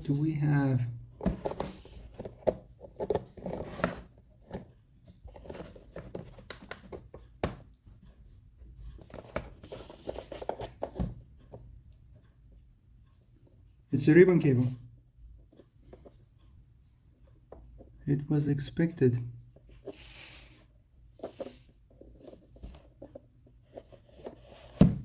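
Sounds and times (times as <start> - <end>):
plastic parts clicking and scraping: 1.2 - 7.8, 19.6 - 25.0.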